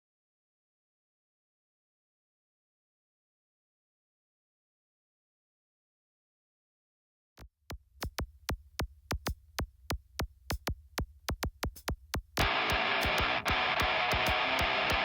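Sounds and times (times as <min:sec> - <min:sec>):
drum machine ticks: 0:07.4 - 0:15.0
electronic music: 0:11.8 - 0:15.0.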